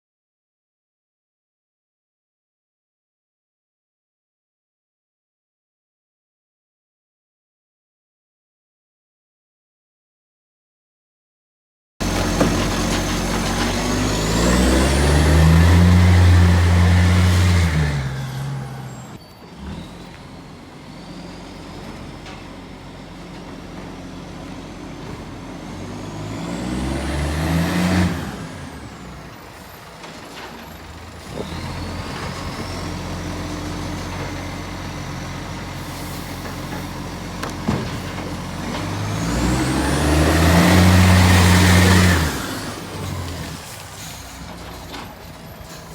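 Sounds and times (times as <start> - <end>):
diesel truck engine revving: 12.0 - 45.9.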